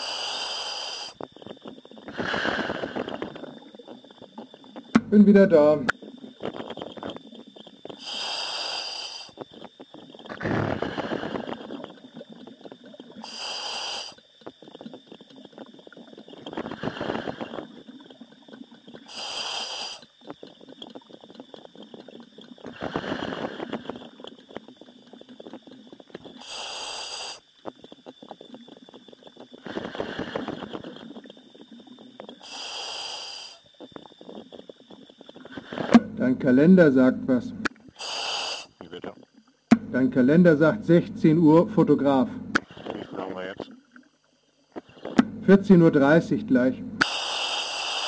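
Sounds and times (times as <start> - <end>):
diver breathing through helmet valve: 0.0 - 1.2, 2.1 - 3.4, 8.0 - 9.4, 10.4 - 11.8, 13.2 - 14.2, 16.6 - 17.8, 19.1 - 20.2, 22.7 - 24.2, 26.3 - 27.5, 29.6 - 31.0, 32.4 - 33.7, 35.4 - 36.0, 38.0 - 38.8, 47.0 - 48.0.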